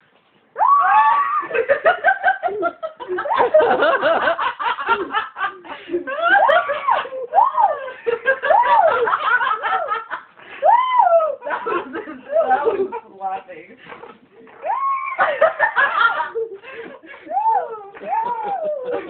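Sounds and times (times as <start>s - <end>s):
person laughing: 15.1s - 19.0s.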